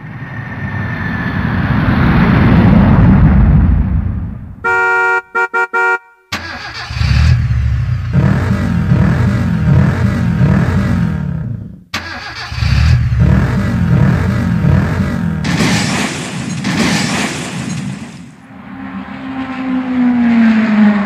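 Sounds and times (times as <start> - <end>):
car engine with wavering pitch: 0.4 - 11.9, 12.5 - 15.5, 18.4 - 21.0
car horn: 4.6 - 6.7.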